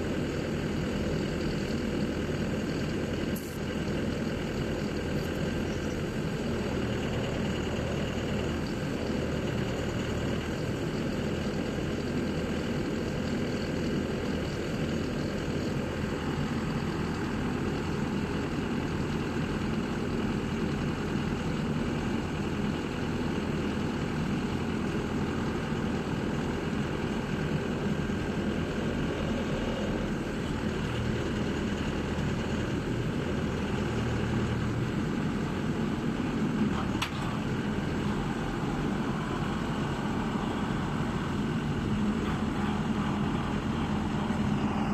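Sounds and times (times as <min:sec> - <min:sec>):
diesel engine running steadily: 0:00.0 - 0:44.9.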